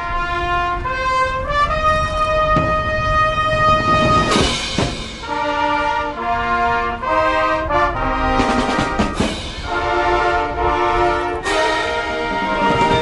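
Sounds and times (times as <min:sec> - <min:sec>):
marching band brass playing: 0:00.0 - 0:13.0
sharp percussion hits: 0:02.5 - 0:06.3, 0:08.4 - 0:10.5, 0:11.4 - 0:13.0.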